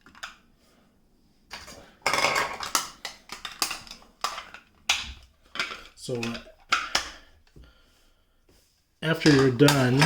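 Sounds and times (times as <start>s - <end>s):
plastic toy pieces clattering: 1.5s - 7.1s, 9.2s - 10.0s.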